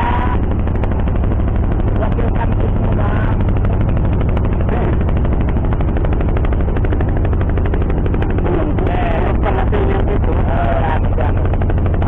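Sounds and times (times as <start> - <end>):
boat engine running: 0.0 - 12.0.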